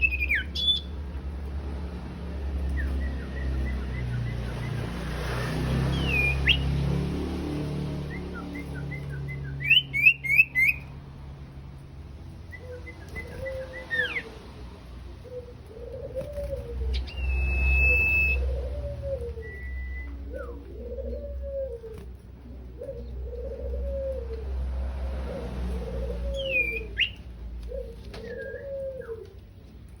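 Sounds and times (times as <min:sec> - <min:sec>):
bird chirps and whistles: 0:05.9 - 0:06.6, 0:08.1 - 0:10.9, 0:16.9 - 0:18.6, 0:26.4 - 0:27.2
low cooing notes: 0:15.2 - 0:27.0.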